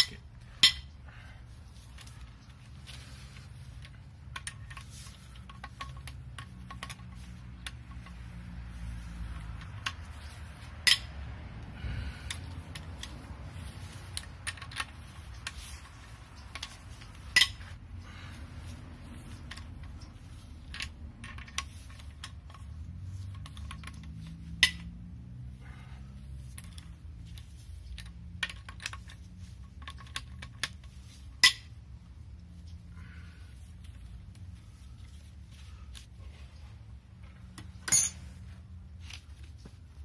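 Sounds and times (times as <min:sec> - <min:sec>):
hand tools clinking on metal: 0:37.8 - 0:38.3.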